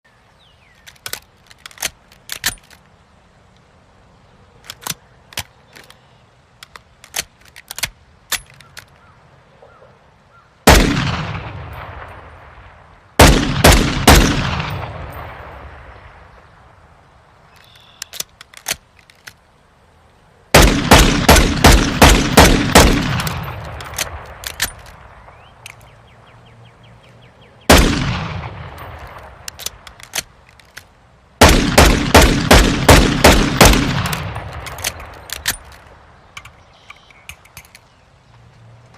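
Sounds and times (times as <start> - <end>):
metallic gun handling clicks: 0.8 - 2.9, 4.6 - 6.0, 6.6 - 9.0, 17.5 - 19.5, 23.0 - 25.9, 28.7 - 31.0, 33.9 - 37.9
pistol gunshots with echo: 10.7 - 12.5, 13.2 - 15.9, 20.6 - 25.4, 27.7 - 29.5, 31.4 - 35.6.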